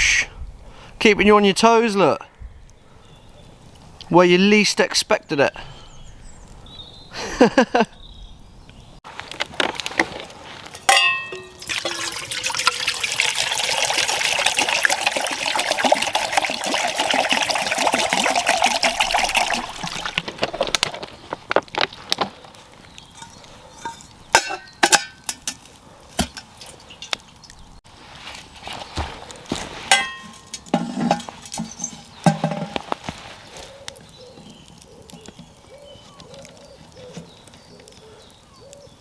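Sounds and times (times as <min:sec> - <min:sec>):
liquid pouring: 0:11.4 - 0:20.5.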